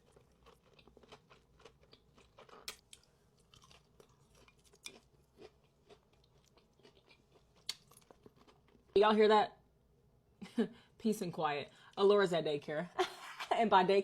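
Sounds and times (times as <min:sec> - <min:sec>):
person chewing crisp food: 0:00.0 - 0:08.9.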